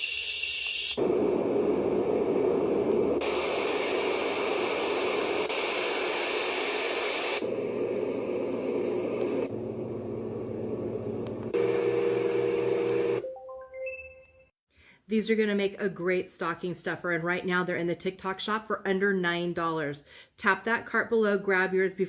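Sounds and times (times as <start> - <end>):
white noise machine hiss: 0.8 - 9.5
steady low hum: 1.0 - 13.2.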